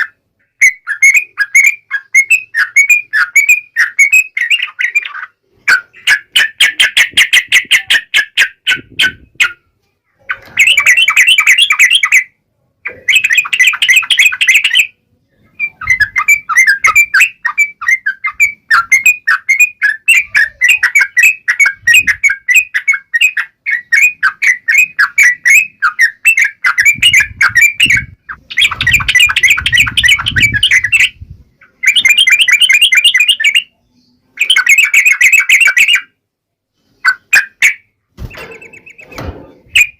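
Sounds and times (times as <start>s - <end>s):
bird chattering calls: 0.0s - 9.6s, 12.9s - 33.8s.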